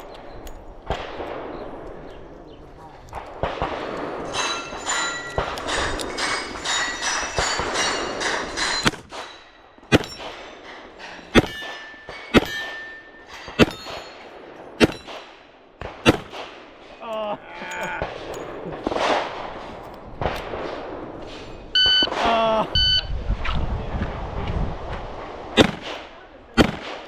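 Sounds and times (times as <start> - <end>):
gunshots: 3.2 - 16.8, 18.0 - 21.2, 21.8 - 22.4, 25.5 - 27.0
steel targets clanging: 3.6 - 15.4.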